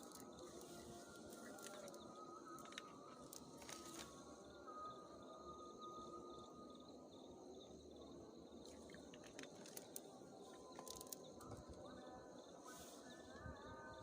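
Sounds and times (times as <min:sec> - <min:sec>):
insects chirping: 0:00.0 - 0:14.0
faint clicks: 0:08.6 - 0:11.7.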